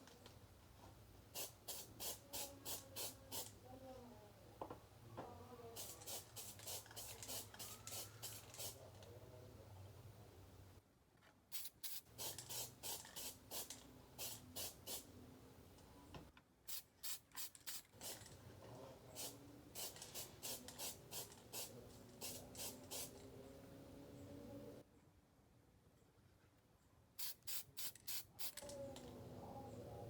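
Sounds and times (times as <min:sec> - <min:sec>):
aerosol spray paint bursts: 0:01.3 - 0:03.6, 0:05.7 - 0:08.8, 0:11.5 - 0:15.2, 0:16.7 - 0:18.4, 0:19.0 - 0:24.1, 0:27.2 - 0:28.8.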